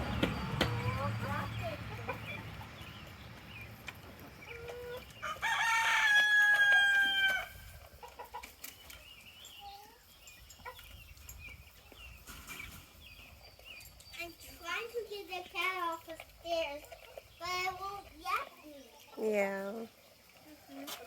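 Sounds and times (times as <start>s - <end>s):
chickens clucking faintly: 0.0s - 21.0s
rooster crowing: 5.2s - 7.6s.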